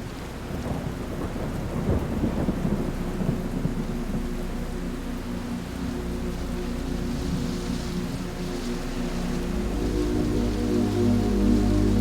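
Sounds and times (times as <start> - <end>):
crackling roll of thunder: 0.0 - 8.4
steady rain: 0.0 - 12.0.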